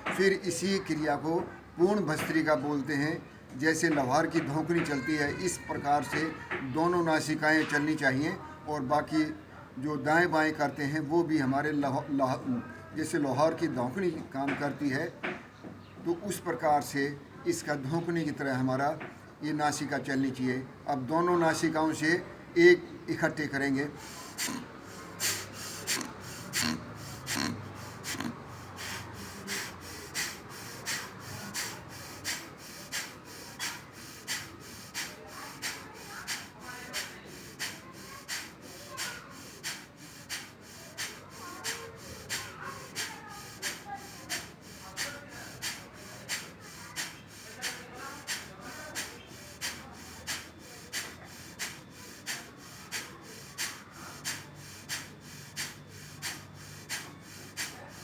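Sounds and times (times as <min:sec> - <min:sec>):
man forceful nasal breathing: 0:23.2 - 0:58.0.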